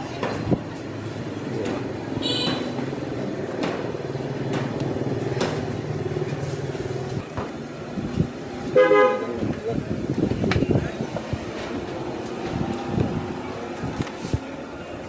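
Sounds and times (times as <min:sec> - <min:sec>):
street traffic: 0:00.0 - 0:15.0
vehicle engine running: 0:02.9 - 0:07.2.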